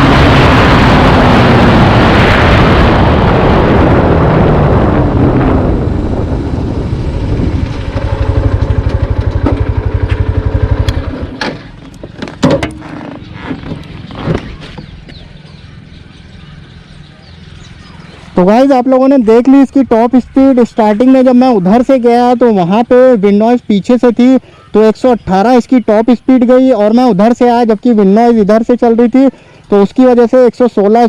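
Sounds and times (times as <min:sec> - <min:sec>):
rush of riding noise: 0:00.0 - 0:31.0
motorcycle engine slowing and idling: 0:03.0 - 0:18.2.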